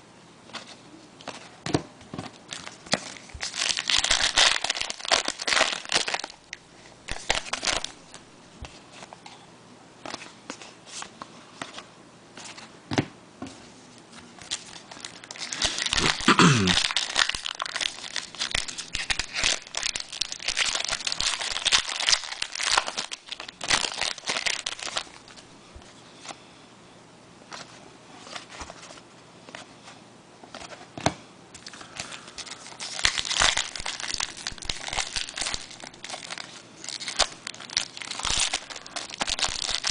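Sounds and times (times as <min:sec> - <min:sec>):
wrappers tearing and crinkling: 0:02.5 - 0:06.4, 0:07.1 - 0:08.0, 0:14.5 - 0:25.4, 0:31.6 - 0:39.9.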